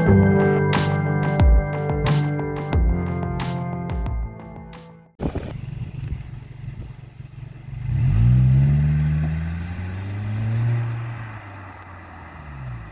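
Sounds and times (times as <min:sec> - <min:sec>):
car engine idling and revving: 0:05.2 - 0:12.9.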